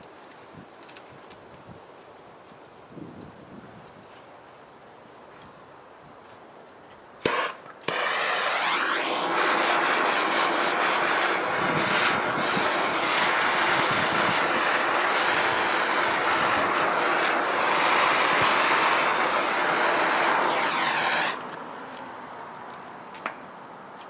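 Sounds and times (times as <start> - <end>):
torch flame hissing: 7.2 - 21.4
gas torch lighting pops: 7.2 - 21.5.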